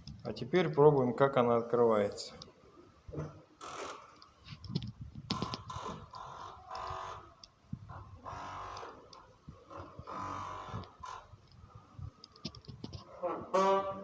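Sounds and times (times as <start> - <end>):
metal door creaking: 13.0 - 14.0.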